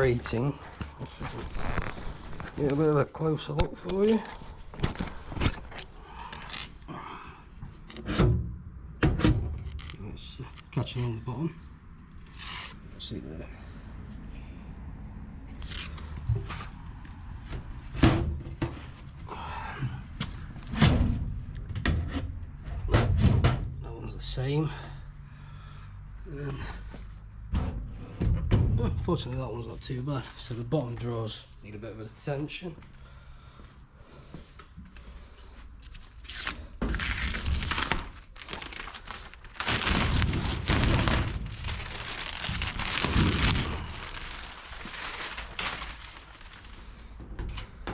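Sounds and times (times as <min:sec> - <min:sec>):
plastic film peeling and crinkling: 0:00.0 - 0:02.9, 0:35.8 - 0:47.2
metal drawers clunking shut: 0:22.8 - 0:23.7.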